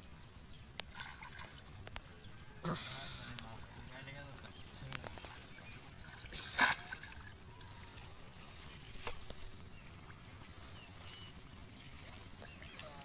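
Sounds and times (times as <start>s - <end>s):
faint background noise: 0.0s - 13.0s
water splash: 5.9s - 7.4s.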